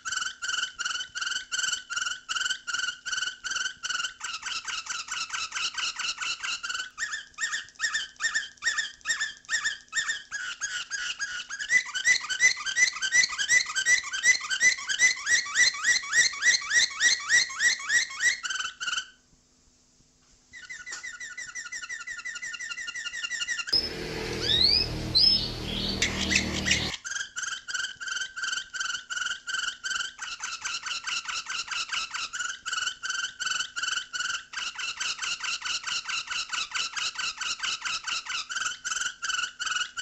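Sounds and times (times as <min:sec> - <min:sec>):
rising whistles: 0:23.8 - 0:27.0.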